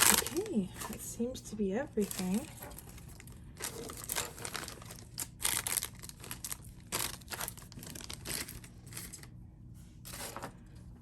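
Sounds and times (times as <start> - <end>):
plastic packaging crinkling: 0.0 - 1.2, 1.9 - 9.4.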